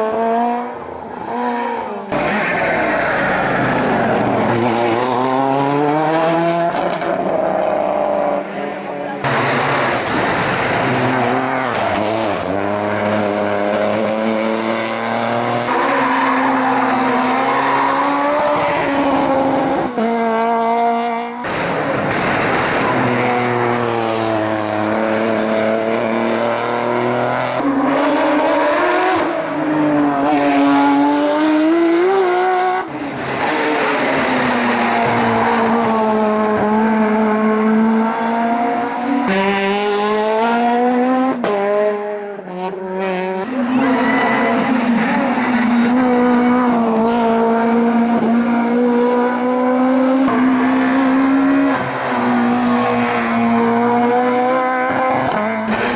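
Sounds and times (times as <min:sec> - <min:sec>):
race car engines at full throttle: 0:00.0 - 0:55.9.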